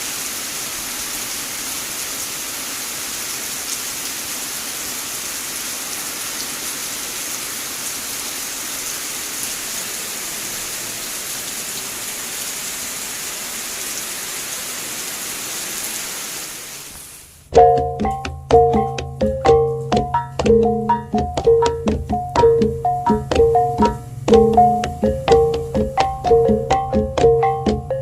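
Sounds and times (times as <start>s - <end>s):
heavy rain: 0.0s - 17.4s.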